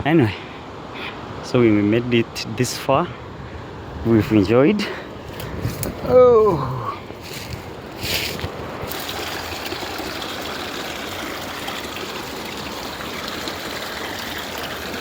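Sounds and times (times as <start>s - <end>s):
water rushing over rocks: 4.2s - 15.0s.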